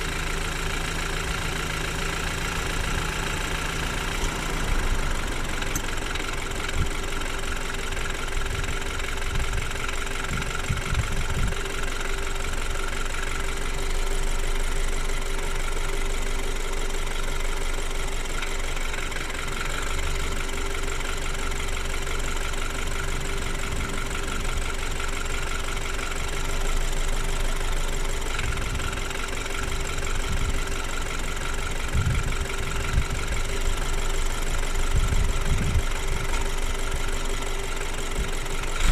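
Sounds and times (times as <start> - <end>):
car engine idling with clatter: 0.0 - 38.9.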